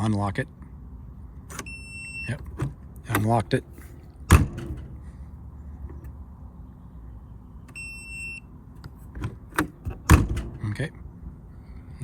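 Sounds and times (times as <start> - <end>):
door lock high beep: 1.6 - 2.4, 7.7 - 8.5.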